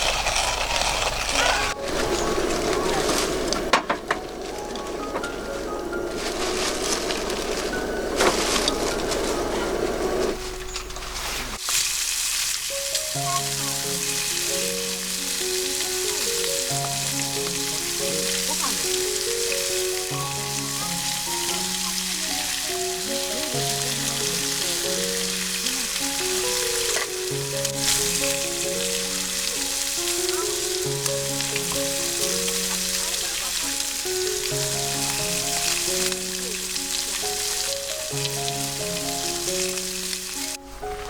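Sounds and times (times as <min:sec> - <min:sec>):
light instrumental melody: 0:01.4 - 0:11.6, 0:12.6 - 0:41.0
food sizzling in a pan: 0:10.6 - 0:41.0.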